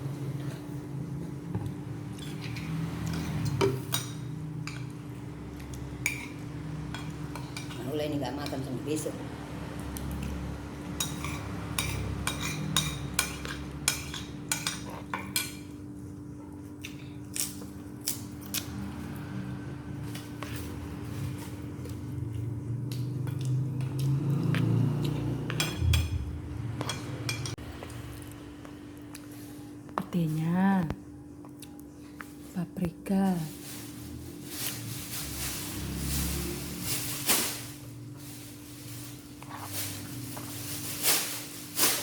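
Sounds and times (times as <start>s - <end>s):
cutlery clinking on dishes: 11.0s - 15.7s
steady low hum: 19.7s - 36.2s.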